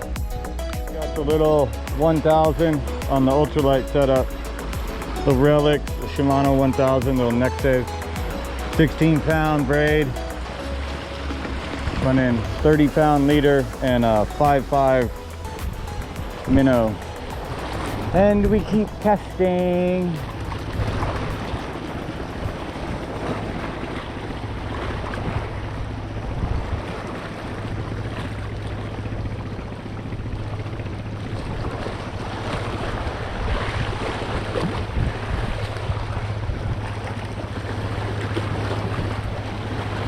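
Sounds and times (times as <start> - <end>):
steady low rumble: 0.0 - 26.9
sea surf washing: 0.0 - 40.0
wind on microphone: 1.8 - 40.0.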